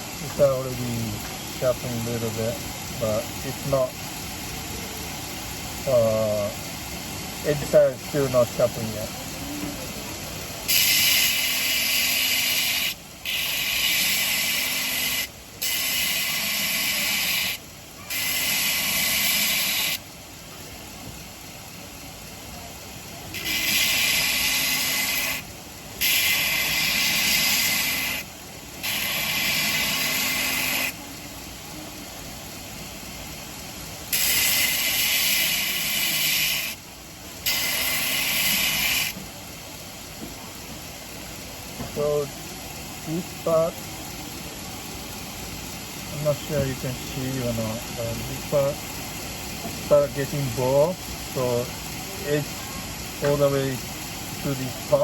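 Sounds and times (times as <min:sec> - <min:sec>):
belt grinder humming: 0:10.6 - 0:20.0, 0:23.3 - 0:31.0, 0:34.0 - 0:36.8, 0:37.4 - 0:39.2
blade grinding on belt grinder: 0:10.6 - 0:20.0, 0:23.3 - 0:31.0, 0:34.1 - 0:36.8, 0:37.4 - 0:39.2.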